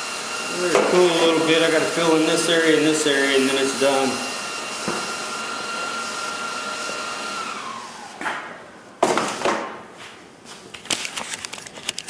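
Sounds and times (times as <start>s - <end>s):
electric motor whirring: 0.0s - 8.2s.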